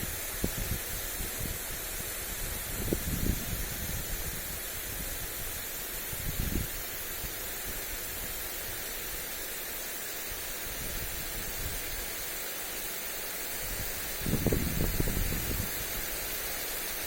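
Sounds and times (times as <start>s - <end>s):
wind rumble on microphone: 0.0s - 8.8s, 13.6s - 16.2s
sprinkler spray hissing: 0.0s - 17.0s.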